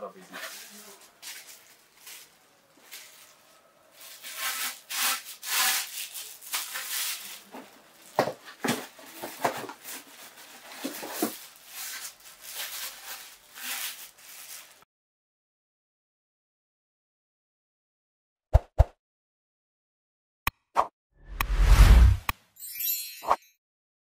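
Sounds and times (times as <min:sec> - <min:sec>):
rubbing and scraping handling noise: 0:00.2 - 0:14.8.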